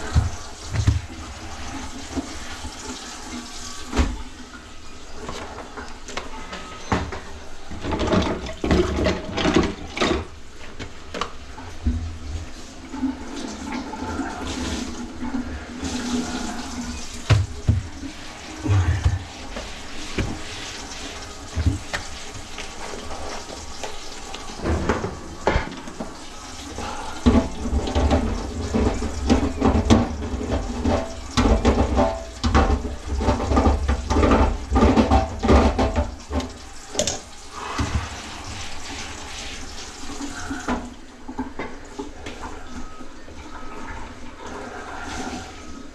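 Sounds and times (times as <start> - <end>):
water gurgling in sink drain: 0.0 - 45.9
knocks and clatter: 27.3 - 37.2.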